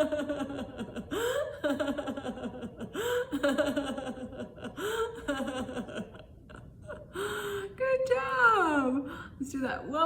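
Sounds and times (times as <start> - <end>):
woman laughing: 0.0 - 7.2
woman gasping in-breath: 9.1 - 9.4.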